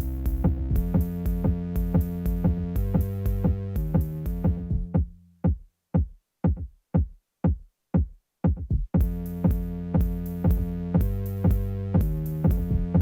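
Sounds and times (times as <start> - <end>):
electronic dance music: 0.0 - 5.0, 9.0 - 13.0
kick drum falling in pitch: 0.0 - 13.0.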